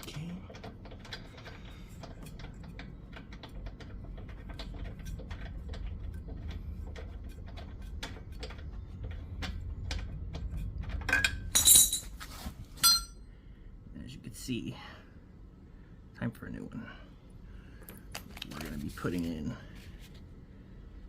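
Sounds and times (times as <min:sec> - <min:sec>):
metallic clinks: 0:11.2 - 0:12.1, 0:12.8 - 0:13.2.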